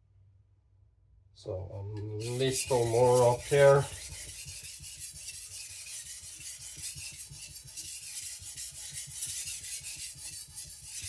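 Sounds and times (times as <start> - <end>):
cleaver scraping on whetstone: 2.2 - 11.0.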